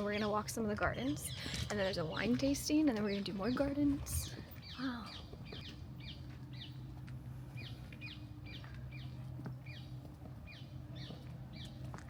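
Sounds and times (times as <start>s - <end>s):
steady low hum: 0.0s - 12.0s
bird chirping: 3.0s - 11.9s.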